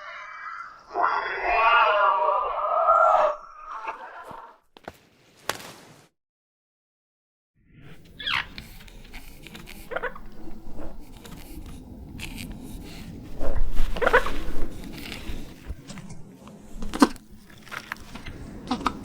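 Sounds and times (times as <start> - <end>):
chirping warbling creature calls: 0.0 - 4.6, 8.2 - 8.5, 9.8 - 10.4
clicks and scrapes: 8.0 - 19.0.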